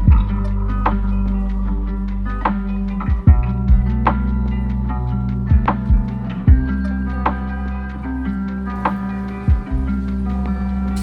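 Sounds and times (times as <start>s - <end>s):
deep kick drum hit: 0.0s - 0.3s, 3.1s - 3.9s, 5.5s - 6.8s
chillhop music: 0.0s - 11.0s.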